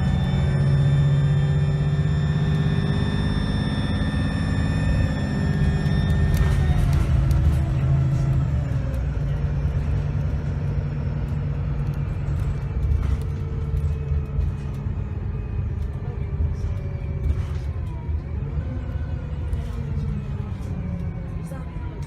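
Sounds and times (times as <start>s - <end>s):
turbocharger whine: 0.0s - 21.6s
bus diesel engine droning: 0.0s - 22.0s.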